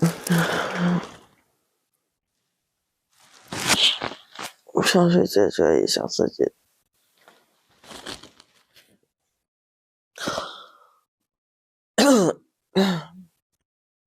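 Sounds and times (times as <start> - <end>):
breathy exhalation: 0.0 - 1.3, 10.2 - 11.0.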